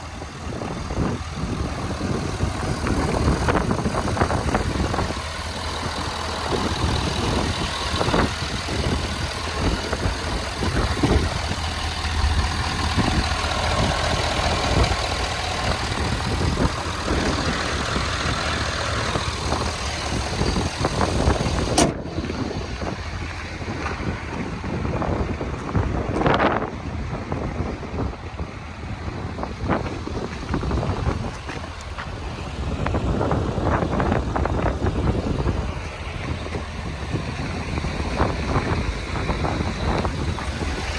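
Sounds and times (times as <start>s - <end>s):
diesel truck engine idling: 0.0s - 40.9s.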